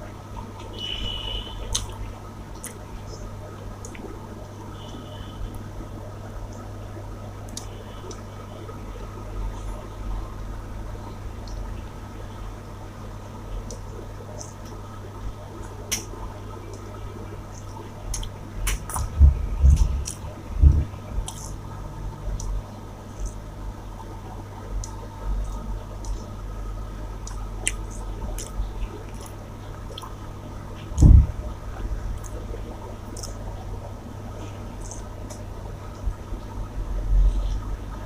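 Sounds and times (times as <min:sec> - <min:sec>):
steady low hum: 0:00.0 - 0:38.0
chewing food: 0:00.6 - 0:02.9, 0:17.6 - 0:21.6, 0:27.2 - 0:31.1, 0:32.1 - 0:33.5
low thumps: 0:19.0 - 0:21.0, 0:31.0 - 0:31.5.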